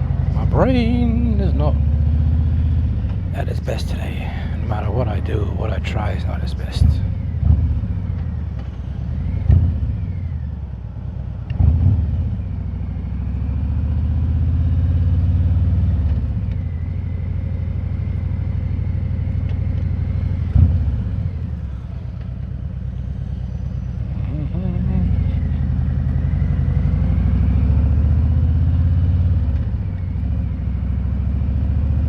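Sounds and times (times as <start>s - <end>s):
motorcycle engine running: 0.0s - 3.4s, 16.0s - 32.0s.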